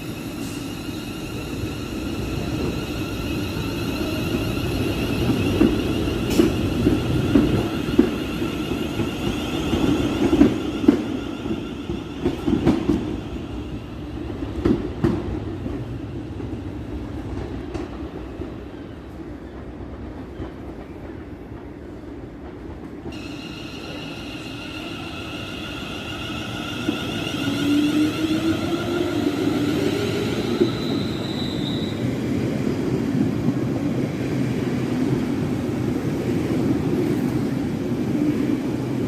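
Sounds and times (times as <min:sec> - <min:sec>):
train wheels clicking on rails: 0:02.0 - 0:16.6.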